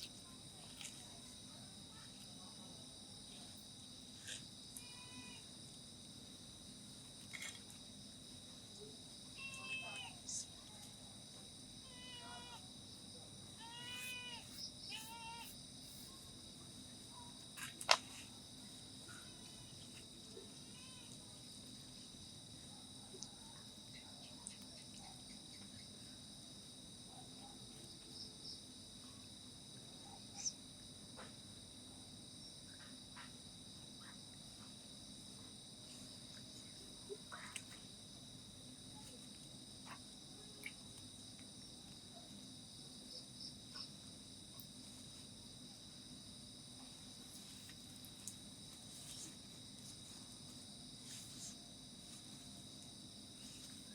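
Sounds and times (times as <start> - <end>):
crickets chirring: 0.0 - 53.9.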